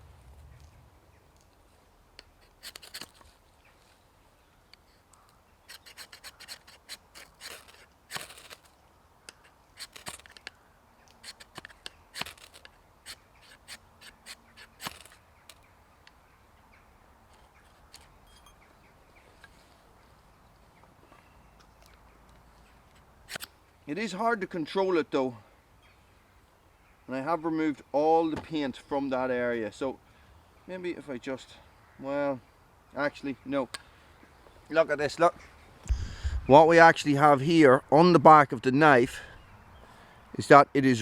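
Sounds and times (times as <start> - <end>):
knife scraping wood: 2.2 - 3.4, 5.6 - 8.7, 9.3 - 10.5, 11.1 - 15.7.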